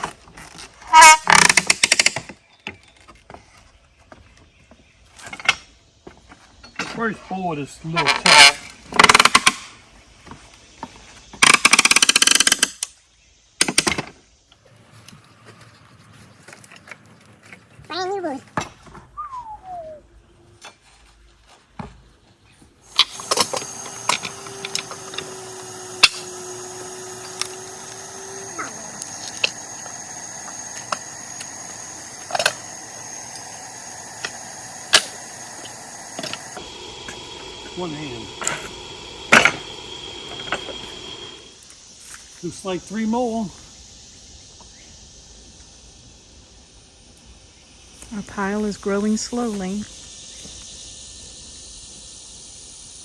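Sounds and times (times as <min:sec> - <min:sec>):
nails creaking out of wood: 0:01.0 - 0:02.2, 0:11.4 - 0:12.8, 0:22.9 - 0:33.5.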